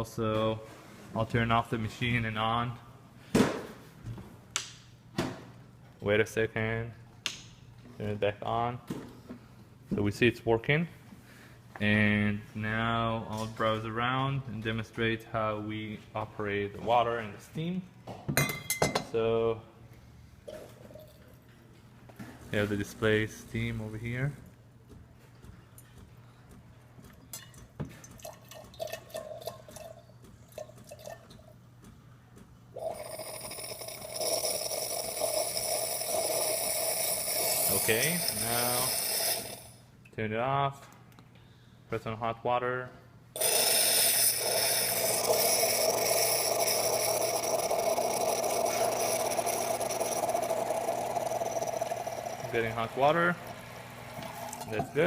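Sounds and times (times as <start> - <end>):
espresso machine pump buzzing: 32.8 - 39.8, 43.4 - 55.0
steam wand spitting and popping: 32.8 - 39.8, 43.4 - 52.7
water hissing from spout: 32.8 - 39.8, 43.4 - 54.8.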